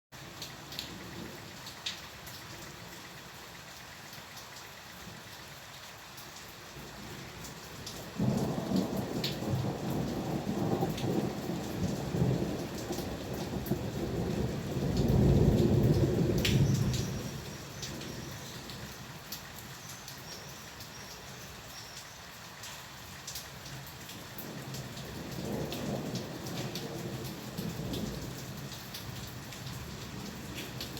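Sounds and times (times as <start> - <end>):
steady rain falling: 0.1 - 30.9
raindrops ticking: 0.3 - 30.9
thunder rumbling: 8.1 - 18.9, 24.4 - 30.9.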